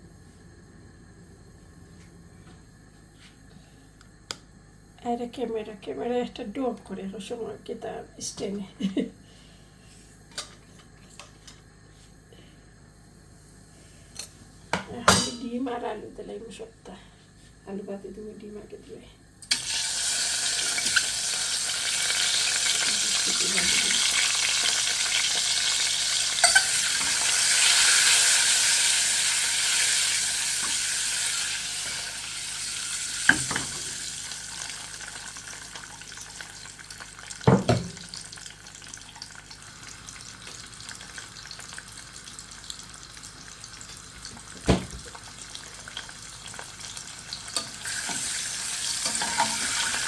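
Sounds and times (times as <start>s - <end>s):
food sizzling in hot oil: 19.5s - 50.0s.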